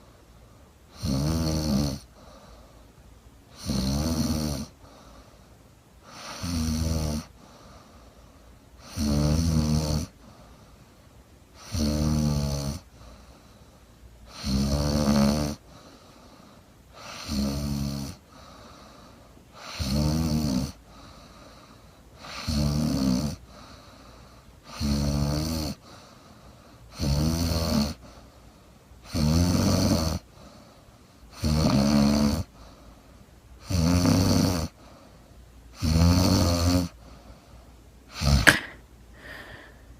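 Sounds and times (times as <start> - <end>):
quiet breathing: 0.0 - 1.0, 2.0 - 3.6, 4.7 - 6.4, 7.2 - 8.9, 10.1 - 11.7, 12.8 - 14.4, 15.6 - 17.2, 18.1 - 19.7, 20.7 - 22.4, 23.3 - 24.8, 25.7 - 27.0, 27.9 - 29.0, 30.2 - 31.4, 32.4 - 33.6, 34.7 - 35.8, 36.8 - 39.9
woman snoring: 0.9 - 2.1, 3.5 - 4.8, 6.1 - 7.4, 8.8 - 10.1, 11.6 - 12.9, 14.3 - 15.6, 17.0 - 18.2, 19.6 - 20.8, 22.2 - 23.5, 24.7 - 25.8, 27.0 - 28.0, 29.1 - 30.2, 31.3 - 32.5, 33.6 - 34.8, 35.8 - 37.0, 38.1 - 39.8.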